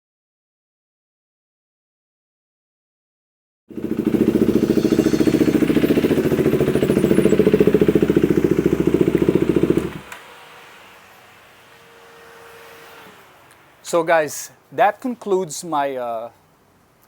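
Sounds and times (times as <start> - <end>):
motorcycle engine running: 3.7 - 10.1
faint hum: 4.0 - 13.9.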